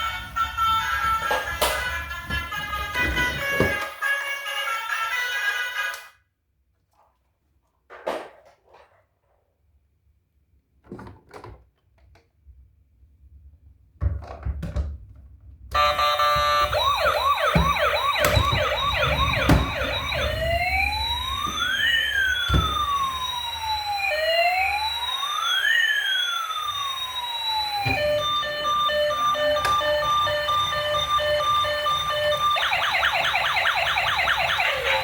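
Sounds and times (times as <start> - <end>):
toy electronic siren: 0.0 - 6.2, 15.8 - 35.0
beeping electronic tune: 15.8 - 21.3.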